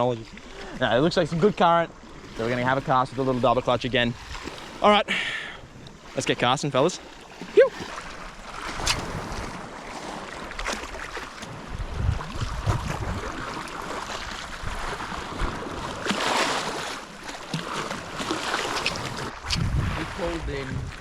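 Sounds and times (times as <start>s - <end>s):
wind rumbling on microphone: 11.5s - 16.8s, 18.7s - 21.0s.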